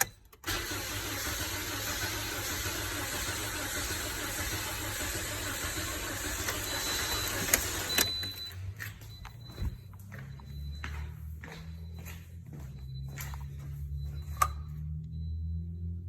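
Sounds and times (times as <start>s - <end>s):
car engine running: 0.5s - 16.0s.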